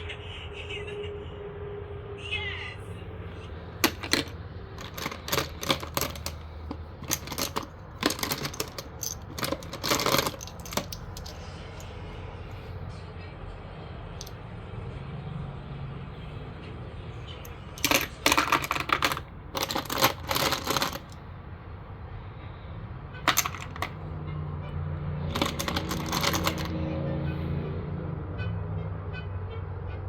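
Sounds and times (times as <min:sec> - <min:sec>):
metal cartridges clinking: 0:03.7 - 0:12.0, 0:17.3 - 0:21.2, 0:23.3 - 0:24.0, 0:25.3 - 0:26.7.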